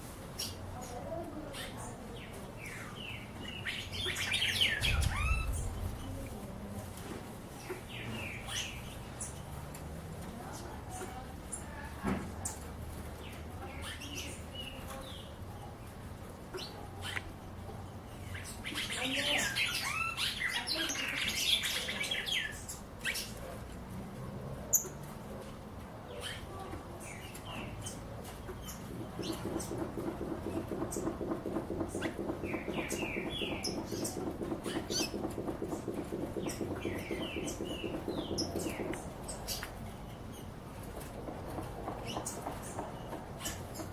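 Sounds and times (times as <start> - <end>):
birds chirping: 0.4 - 6.4, 26.1 - 43.9
steady low hum: 4.6 - 6.8, 28.7 - 43.9
low fast pulsing sound: 28.9 - 39.2.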